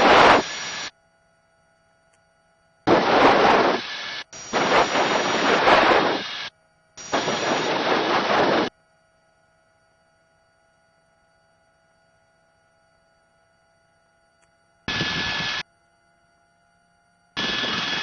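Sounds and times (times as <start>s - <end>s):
radio static bursts: 0.0s - 0.9s, 2.9s - 8.7s, 14.9s - 15.6s, 17.4s - 18.0s.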